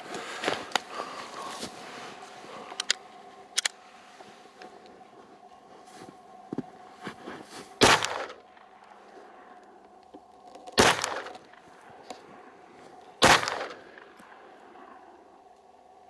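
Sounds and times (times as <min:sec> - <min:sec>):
pistol shots: 0:07.8 - 0:08.4, 0:10.8 - 0:11.5, 0:13.2 - 0:14.1.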